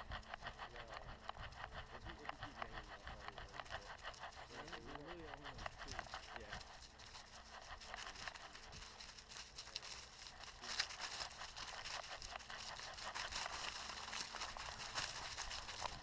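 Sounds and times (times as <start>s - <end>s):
footsteps crunching on trail: 5.8s - 16.0s.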